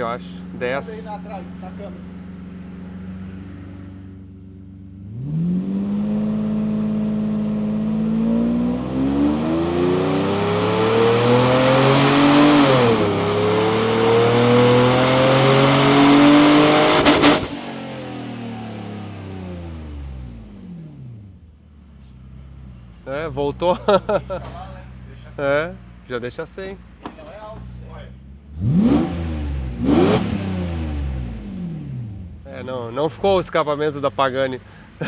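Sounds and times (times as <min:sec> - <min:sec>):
car engine revving on dyno: 0:04.8 - 0:21.2, 0:28.5 - 0:32.5
exhaust cracks: 0:15.8 - 0:17.7.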